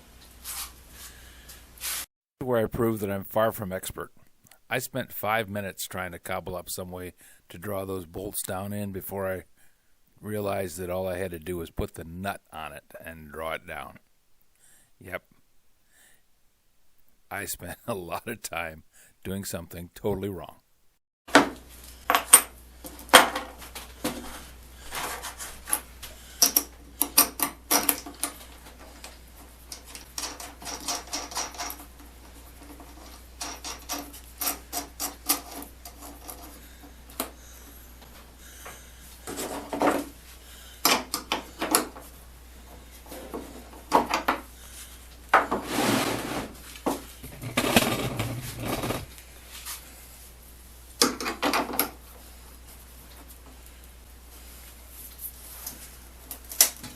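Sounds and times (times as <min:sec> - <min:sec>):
steady low hum: 0:21.6 - 0:51.0
metal scraping: 0:45.5 - 0:49.1.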